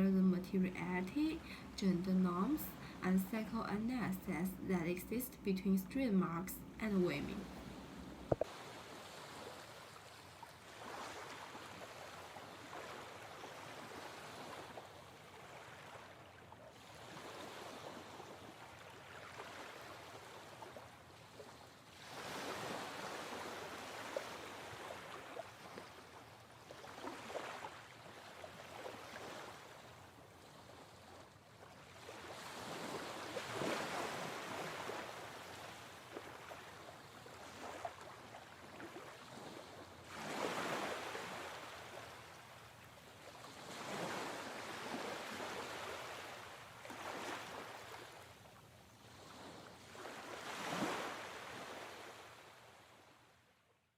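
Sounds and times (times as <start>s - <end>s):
ocean waves washing in: 0.6s - 16.1s, 21.9s - 29.9s, 32.0s - 42.7s.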